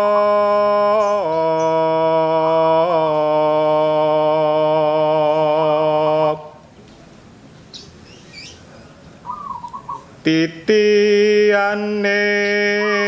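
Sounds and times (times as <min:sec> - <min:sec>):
man singing slow chant: 0:00.0 - 0:06.7, 0:10.2 - 0:13.0.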